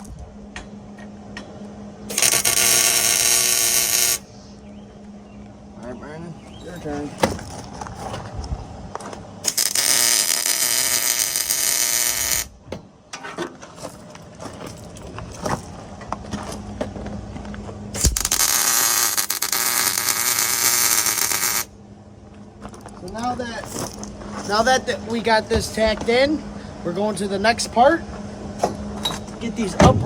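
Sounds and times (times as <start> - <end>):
arc welder crackling hiss: 2.1 - 4.3, 9.4 - 12.5, 18.0 - 21.7.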